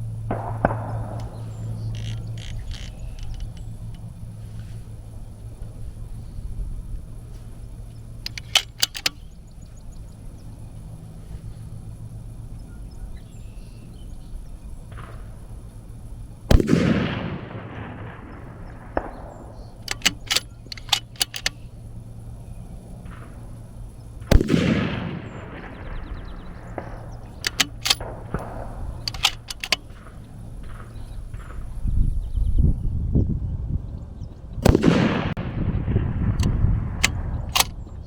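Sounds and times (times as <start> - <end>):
gunshots with rolling echo: 0.2 - 3.0, 16.5 - 21.5, 23.0 - 31.8, 34.6 - 37.8
short sharp clicks: 8.2 - 9.3, 19.8 - 21.6, 26.8 - 28.1, 29.0 - 30.1, 36.4 - 37.8.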